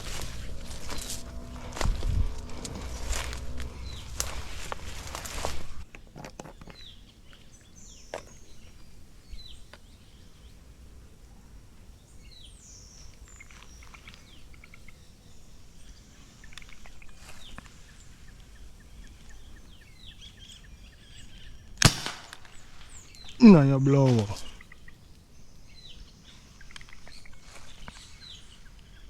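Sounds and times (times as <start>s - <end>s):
birds chirping and calling: 0.0s - 5.8s.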